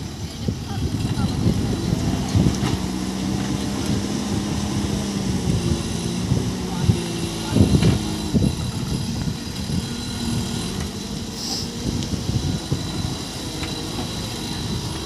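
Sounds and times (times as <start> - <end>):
diesel engine rumbling: 0.0 - 15.0
knocks and clanks: 7.6 - 9.7.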